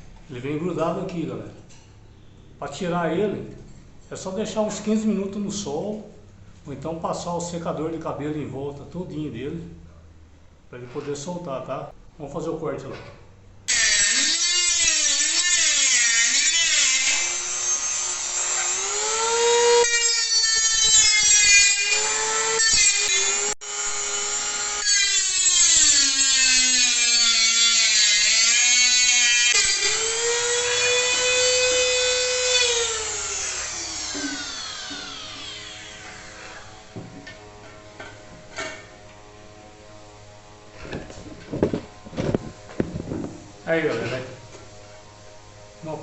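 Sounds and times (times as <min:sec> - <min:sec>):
rotary tool cutting metal: 0:13.7 - 0:38.9.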